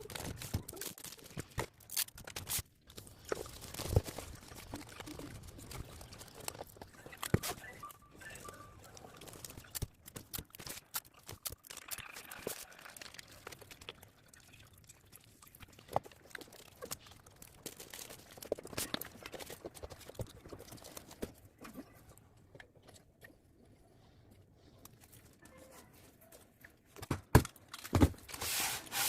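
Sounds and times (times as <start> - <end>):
hands handling packaging: 0.0 - 13.7, 15.9 - 21.9, 24.8 - 29.0.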